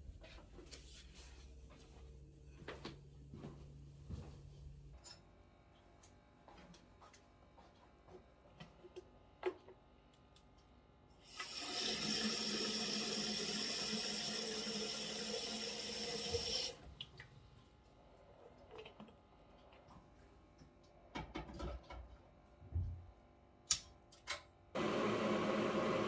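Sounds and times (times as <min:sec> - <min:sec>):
tap running water into sink: 0:11.4 - 0:16.8.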